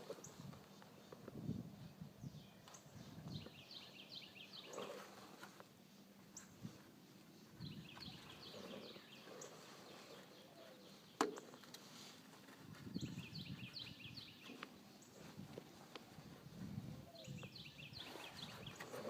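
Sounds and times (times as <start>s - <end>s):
bird chirping: 0.1s - 5.2s, 7.2s - 11.8s, 12.8s - 15.4s, 16.5s - 19.0s.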